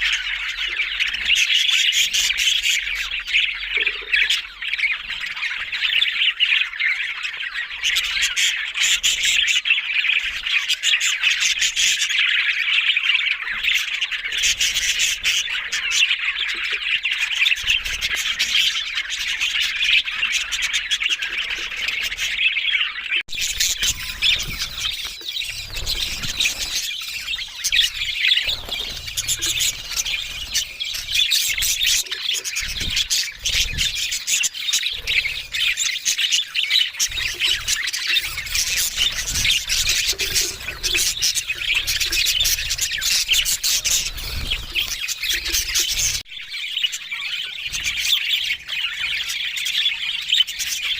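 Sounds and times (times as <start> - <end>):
budgerigars chattering: 0.0 - 50.9.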